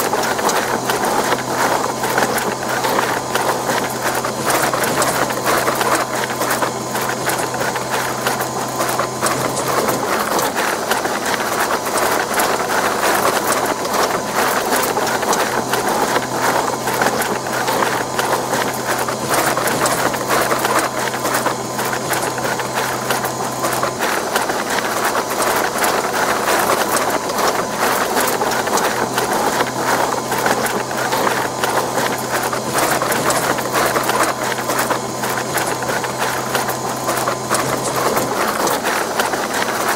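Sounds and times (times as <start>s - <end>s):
dough mixer motor hum: 0.0s - 39.9s
kneading mechanism clatter: 0.0s - 39.9s.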